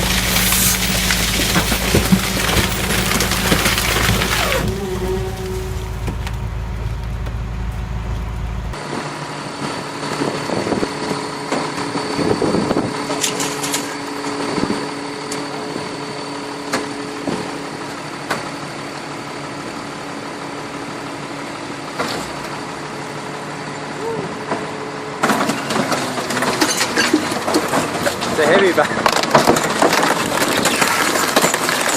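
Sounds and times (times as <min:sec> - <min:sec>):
furniture cracking and knocking: 0:00.0 - 0:05.4
truck engine running: 0:00.0 - 0:13.0
machine whine: 0:00.0 - 0:17.0.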